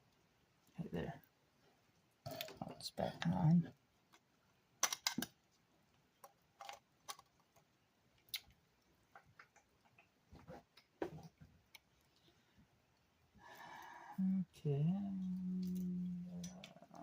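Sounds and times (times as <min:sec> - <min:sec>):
plastic parts clicking and tapping: 0:04.8 - 0:05.4, 0:06.2 - 0:07.7.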